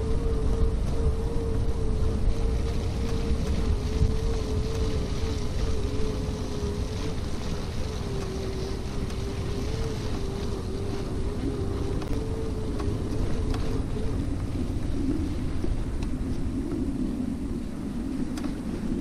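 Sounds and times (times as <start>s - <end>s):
wind rumbling on microphone: 0.0s - 19.0s.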